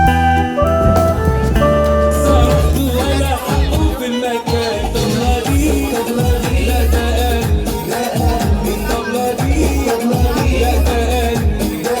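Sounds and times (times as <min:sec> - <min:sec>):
upbeat music with heavy bass: 0:00.0 - 0:12.0.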